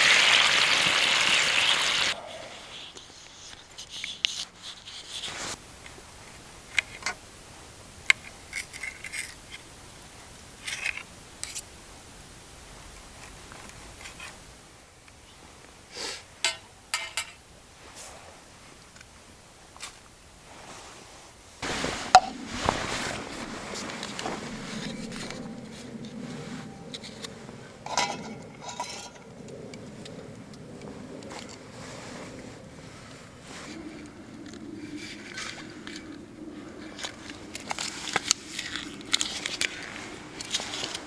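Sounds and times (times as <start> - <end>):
rush like pouring water: 0.0 - 3.0, 21.6 - 26.5.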